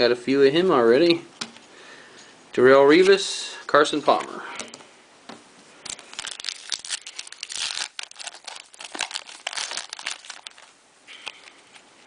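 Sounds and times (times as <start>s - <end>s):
cards crinkling and rustling: 5.8s - 12.0s.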